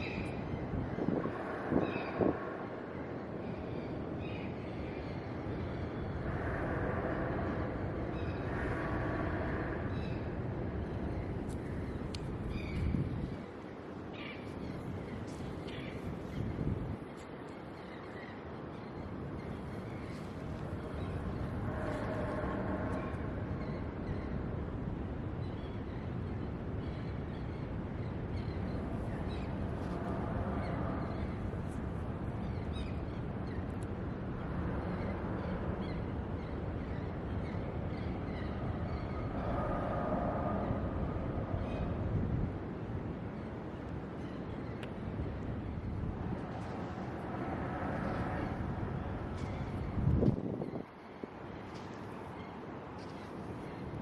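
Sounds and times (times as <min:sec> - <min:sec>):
surf on a beach: 0:00.0 - 0:11.1
wind: 0:00.0 - 0:54.0.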